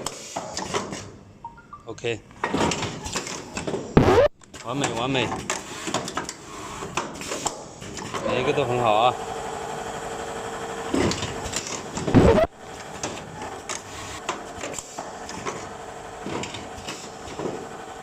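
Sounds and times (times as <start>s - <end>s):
machine clatter and clicks: 10.9s - 17.8s
machine hum: 12.2s - 12.6s.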